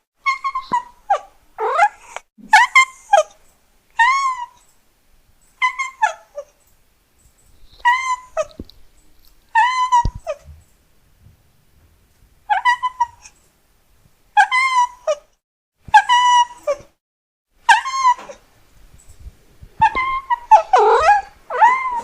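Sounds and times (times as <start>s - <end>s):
cat meowing: 19.8s - 22.0s.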